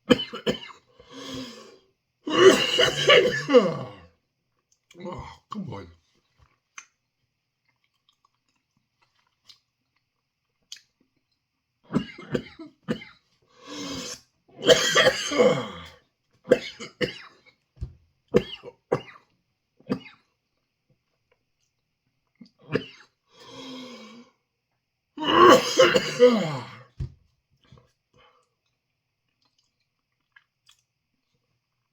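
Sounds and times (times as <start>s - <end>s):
man clearing throat: 2.3s - 4.0s, 14.6s - 15.9s, 25.2s - 26.9s
man coughing: 2.3s - 4.0s, 14.6s - 15.9s, 25.2s - 26.8s.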